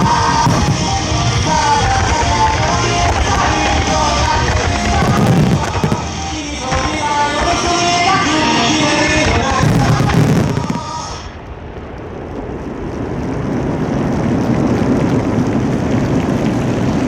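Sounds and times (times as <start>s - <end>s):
music: 0.0s - 11.2s
crowd noise: 0.0s - 11.4s
firework bursts and crackle: 0.0s - 17.0s.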